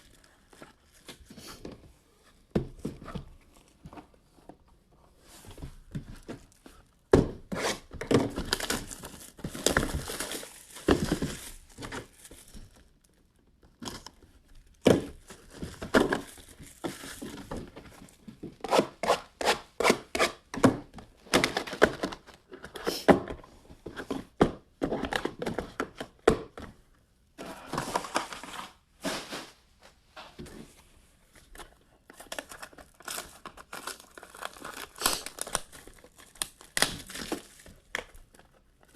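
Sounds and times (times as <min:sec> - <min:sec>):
plastic shrink wrap crinkling: 0:08.3 - 0:13.3, 0:13.9 - 0:18.3, 0:32.1 - 0:38.9.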